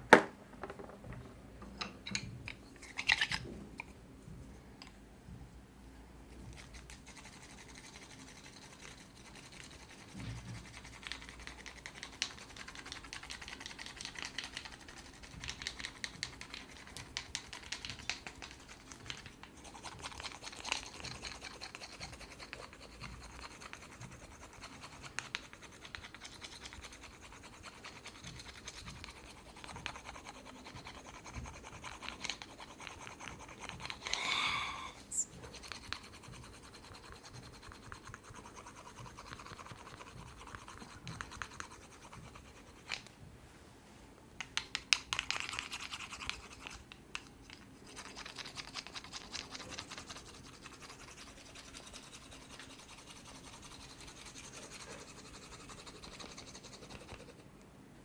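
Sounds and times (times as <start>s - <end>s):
hands scratching hair and scalp: 6.5s - 34.3s.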